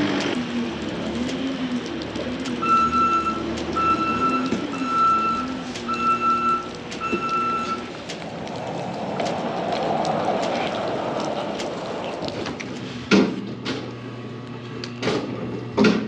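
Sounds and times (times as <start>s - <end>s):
engine running: 0.0s - 16.0s
reverse alarm beeping: 2.6s - 7.8s.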